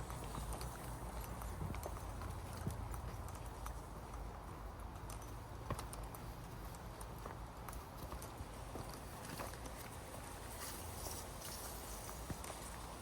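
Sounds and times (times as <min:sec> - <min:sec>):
footsteps on hard path: 0:00.0 - 0:13.0
sharp clicks: 0:00.4 - 0:09.0.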